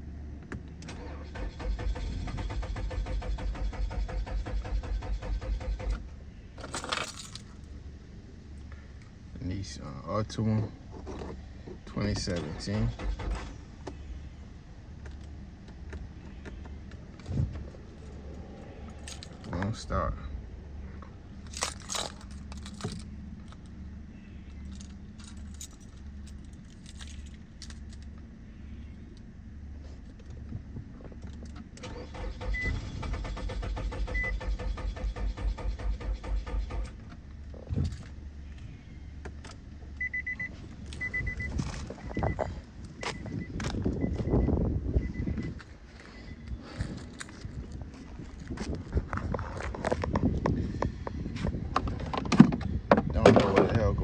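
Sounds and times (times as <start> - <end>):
steady low hum: 0.0 - 34.7, 35.8 - 51.9
engine cranking on starter: 0.8 - 6.2, 12.1 - 13.7, 31.8 - 37.2
car keys clinking: 6.6 - 7.7, 18.9 - 19.9, 21.4 - 23.8, 24.4 - 28.2, 39.5 - 44.4.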